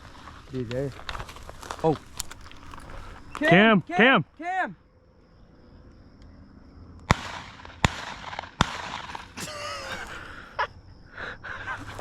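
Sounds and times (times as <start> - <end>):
shotgun shots echoing: 7.1 - 9.5.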